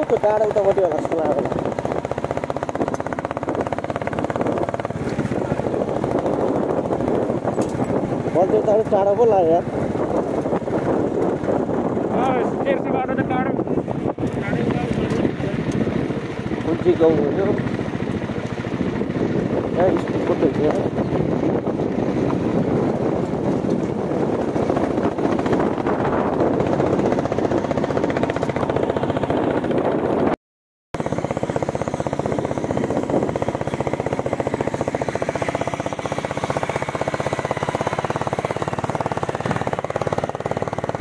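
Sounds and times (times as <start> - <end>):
motorcycle engine thumping: 0.0 - 30.3, 31.0 - 41.0.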